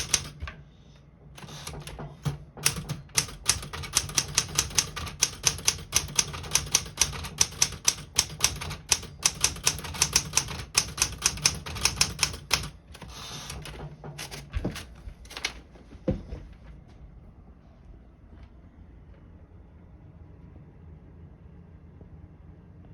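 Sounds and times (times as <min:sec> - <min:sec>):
typewriter keys clacking: 0:00.0 - 0:00.5, 0:01.4 - 0:15.6
typewriter rasping: 0:00.0 - 0:00.5, 0:01.4 - 0:15.6.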